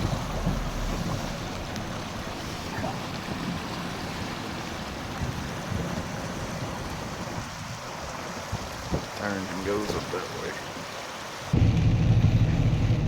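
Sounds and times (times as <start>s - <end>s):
heavy rain rushing: 0.0s - 13.0s
low rumble: 11.6s - 13.0s.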